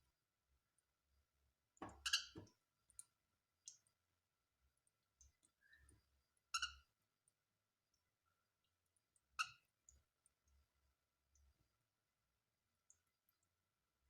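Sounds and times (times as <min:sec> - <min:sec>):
cockatiel chirps and clicks: 0:06.6 - 0:06.8, 0:09.4 - 0:09.6.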